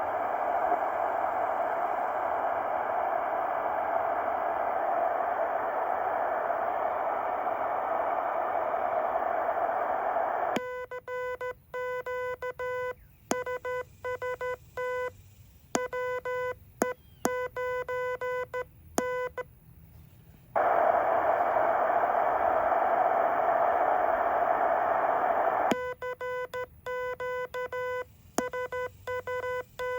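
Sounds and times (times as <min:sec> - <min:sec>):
radio receiver hiss: 0:00.0 - 0:10.6, 0:20.6 - 0:26.0.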